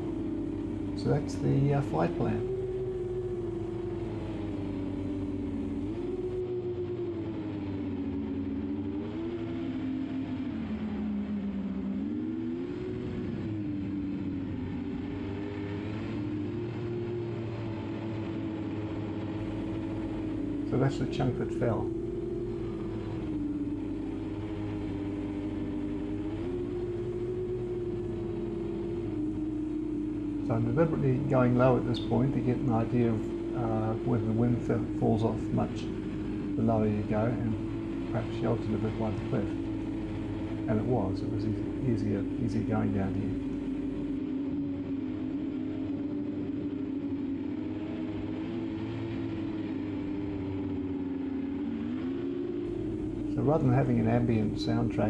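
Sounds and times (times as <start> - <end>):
drone motors humming: 0.0 - 6.4, 19.4 - 44.2, 52.7 - 55.0
strong wind: 19.4 - 44.2, 52.7 - 55.0.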